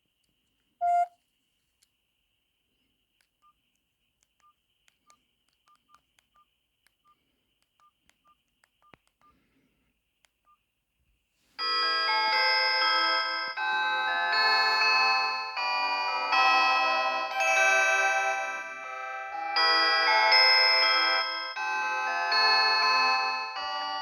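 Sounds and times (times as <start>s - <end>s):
button clicks: 0.8s - 1.1s
phone keypad beeps: 0.8s - 1.1s
phone ringtone melody: 0.8s - 1.1s, 11.6s - 24.0s.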